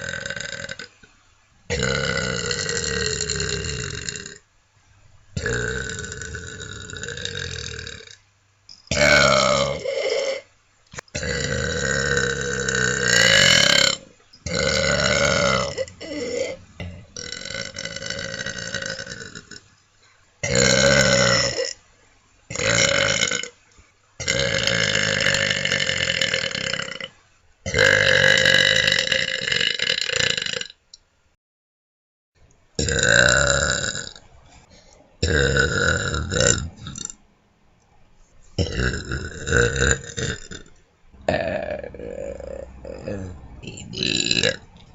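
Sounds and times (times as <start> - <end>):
person burping: 0.0 - 1.0, 1.7 - 4.4, 5.4 - 8.2, 8.9 - 10.5, 11.1 - 19.7, 20.4 - 21.8, 22.5 - 23.5, 24.2 - 27.1, 27.7 - 30.8, 32.8 - 34.2, 35.2 - 37.2, 38.6 - 44.7.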